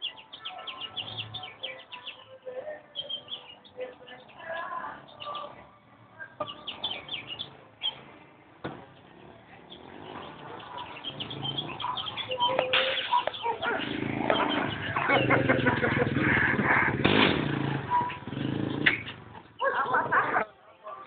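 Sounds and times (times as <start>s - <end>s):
motorcycle engine: 6.7s - 20.4s.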